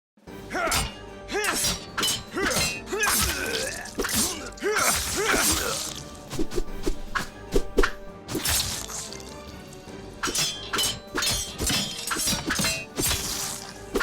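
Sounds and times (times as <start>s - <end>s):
sword blades clashing: 0.6s - 6.0s, 10.2s - 14.0s.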